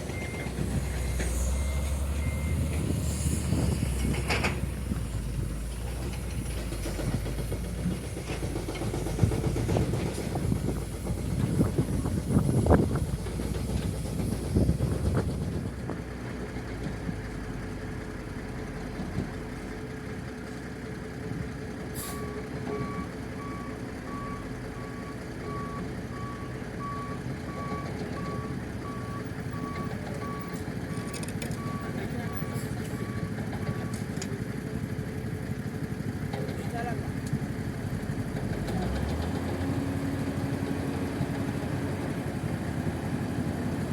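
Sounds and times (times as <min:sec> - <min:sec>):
diesel machinery engine running: 0:00.0 - 0:43.9
reversing alarm beeping: 0:00.1 - 0:04.4, 0:22.2 - 0:34.0.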